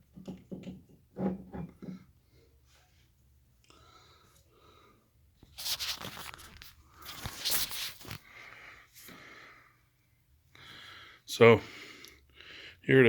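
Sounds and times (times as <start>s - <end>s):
rustling and scraping handling noise: 5.4s - 8.3s.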